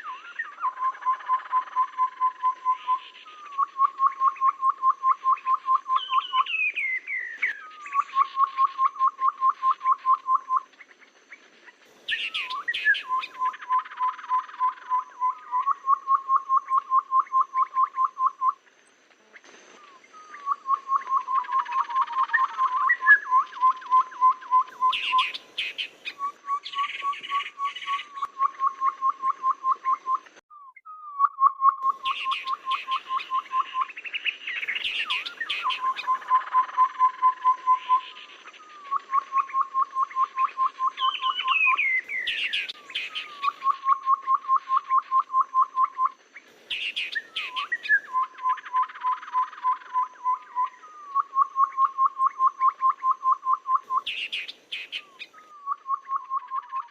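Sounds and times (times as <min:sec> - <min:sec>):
rapid piping bird notes: 0:00.0 - 0:56.9
bird chirps and squeaky calls: 0:31.8 - 0:36.8, 0:40.9 - 0:44.3, 0:46.7 - 0:49.8, 0:54.0 - 0:55.5.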